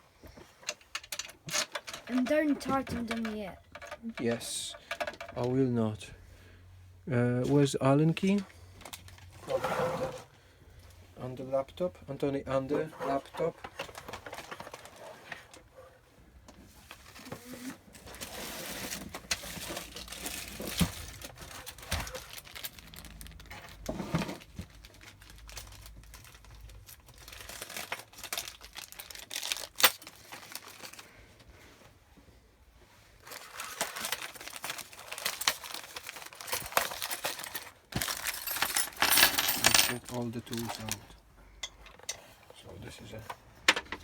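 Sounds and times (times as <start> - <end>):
plastic packaging crinkling: 17.4 - 23.9, 24.7 - 31.2, 33.2 - 38.6
knocks and clicks of parts: 43.6 - 44.0.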